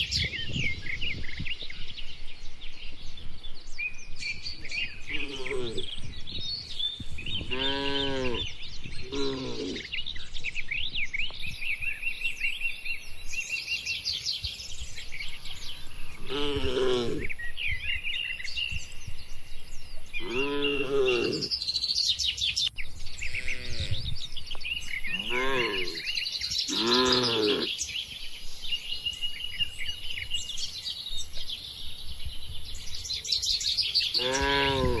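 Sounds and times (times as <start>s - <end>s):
birds chirping: 0.0s - 35.0s
cattle mooing: 7.5s - 8.5s, 16.2s - 17.3s, 20.2s - 21.5s, 25.1s - 26.1s, 26.7s - 27.7s, 34.2s - 35.0s.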